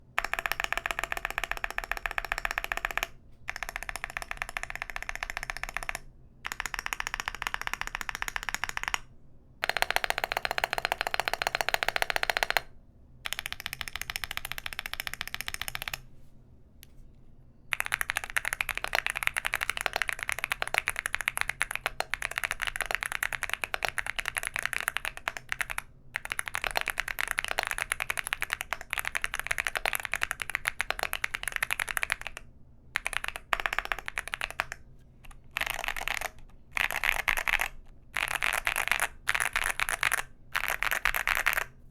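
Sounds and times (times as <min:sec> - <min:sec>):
mechanical keyboard typing: 0:00.2 - 0:16.0, 0:17.7 - 0:41.7.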